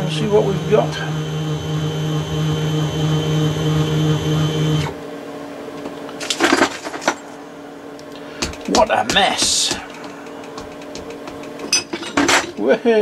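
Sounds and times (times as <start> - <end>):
machine motor humming: 0.0 - 5.6, 7.9 - 11.7
metallic knocks and clatters: 8.4 - 12.6.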